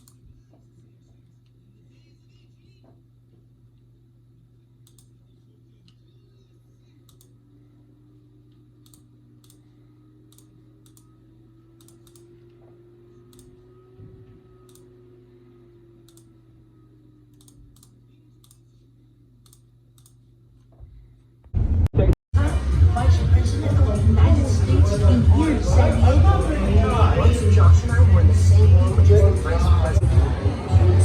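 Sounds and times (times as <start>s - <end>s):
low steady hum: 0.0s - 31.0s
faint clicks: 7.1s - 7.4s, 11.8s - 12.3s.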